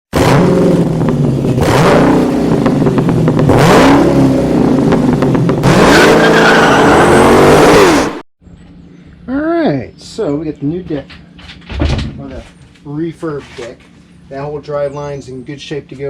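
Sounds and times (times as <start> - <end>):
vehicle engine revving: 0.1 - 8.2.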